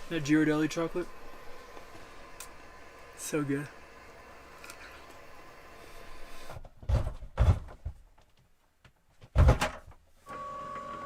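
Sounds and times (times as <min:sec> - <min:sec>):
steady hum: 0:00.0 - 0:06.6.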